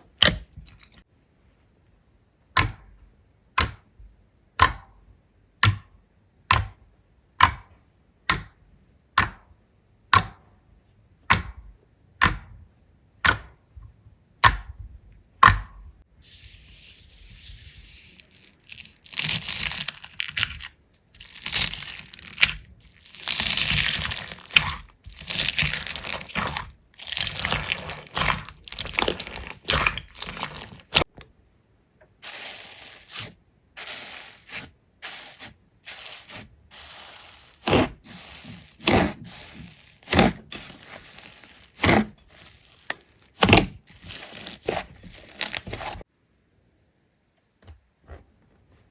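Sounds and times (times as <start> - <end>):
slime crackling and tearing: 18.2 - 31.1, 35.1 - 46.0
slime popping: 18.6 - 31.1.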